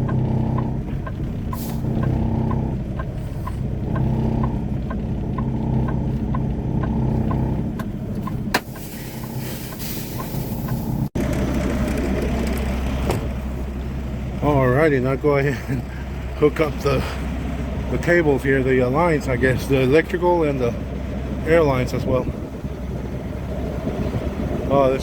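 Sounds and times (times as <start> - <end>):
light regular ticking: 0.0 - 10.9
diesel engine running: 0.0 - 25.0.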